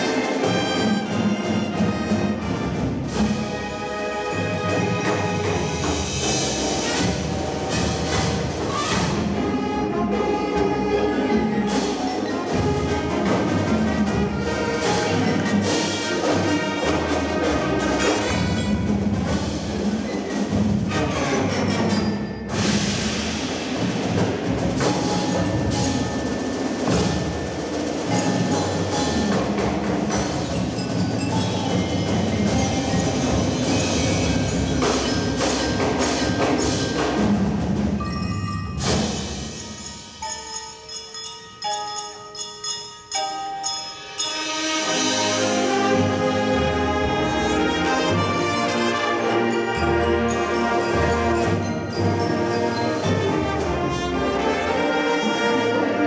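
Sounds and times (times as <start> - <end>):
marching band playing: 0.0 - 41.3, 43.7 - 56.0
mallet percussion notes: 0.0 - 56.0.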